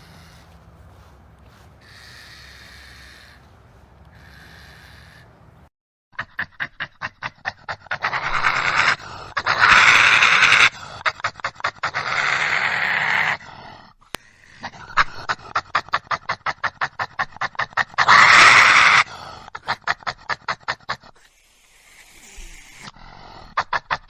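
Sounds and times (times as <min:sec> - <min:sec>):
badger calling: 0:00.0 - 0:05.7, 0:08.0 - 0:10.8, 0:17.7 - 0:24.0.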